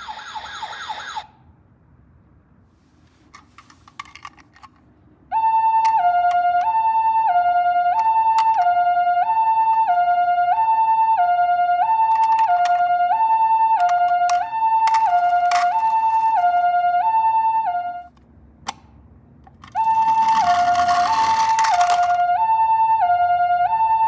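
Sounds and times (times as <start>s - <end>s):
two-tone ambulance siren: 0.0s - 1.4s, 5.3s - 18.2s, 19.5s - 24.0s
sharp clicks and rattle: 3.3s - 4.8s, 8.0s - 8.7s, 12.1s - 12.8s, 13.8s - 16.5s, 19.5s - 22.2s.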